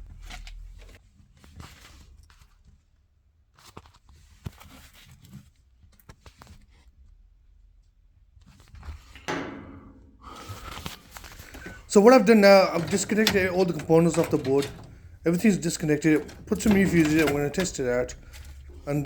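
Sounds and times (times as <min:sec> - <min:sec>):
clicks and knocks of hands working: 0:09.3 - 0:19.0.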